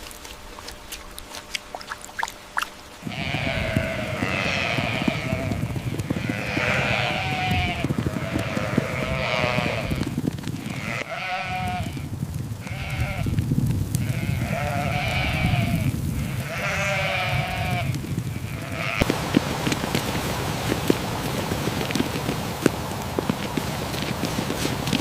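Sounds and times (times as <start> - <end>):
sheep bleating: 3.0 - 12.0, 12.7 - 13.3, 14.0 - 19.1.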